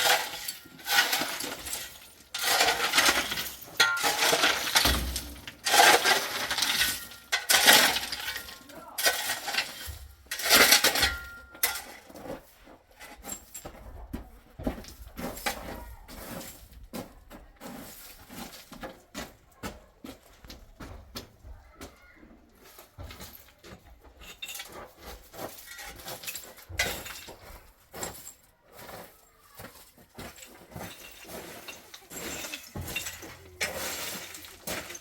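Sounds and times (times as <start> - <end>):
hand tool scraping cement mortar: 0.0 - 13.5, 24.6 - 35.0
clinks and taps of grit: 0.0 - 35.0.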